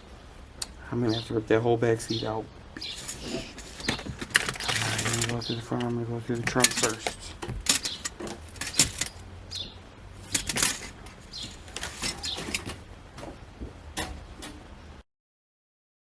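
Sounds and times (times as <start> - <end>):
hands handling car parts: 2.8 - 13.4.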